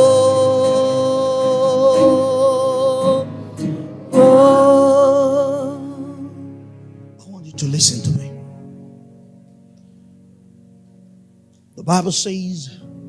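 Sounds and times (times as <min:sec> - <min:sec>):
person singing long notes: 0:00.0 - 0:06.6
instrumental accompaniment: 0:00.0 - 0:13.0.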